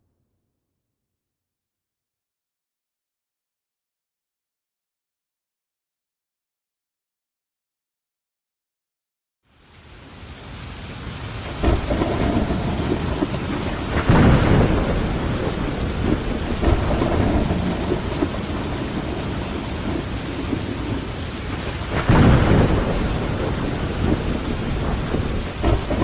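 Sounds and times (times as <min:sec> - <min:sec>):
rain pattering on a window: 0:09.5 - 0:26.0
low rolls of thunder: 0:10.6 - 0:26.0.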